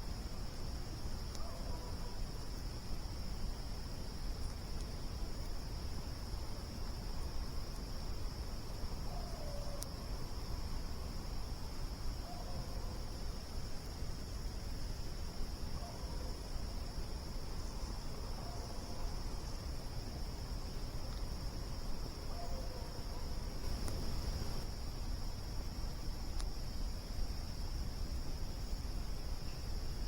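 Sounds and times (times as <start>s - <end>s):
crickets chirping: 0.0s - 30.0s
low noisy hiss: 0.0s - 30.0s
campfire pops: 23.6s - 24.7s.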